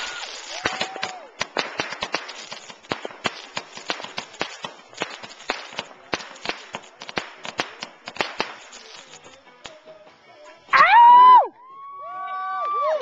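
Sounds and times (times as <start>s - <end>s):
fireworks popping and banging: 0.0s - 10.2s.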